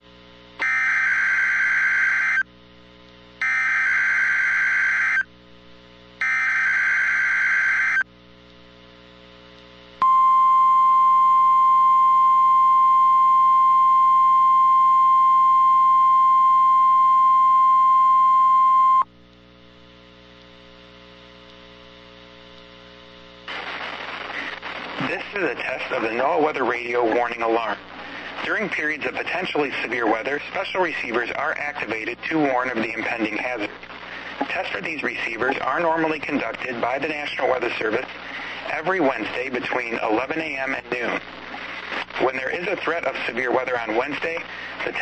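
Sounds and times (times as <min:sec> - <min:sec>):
faint receiver hiss and hum: 0:00.0 - 0:45.0
steady warning alarm tone: 0:00.6 - 0:02.4, 0:03.4 - 0:05.2, 0:06.2 - 0:08.0.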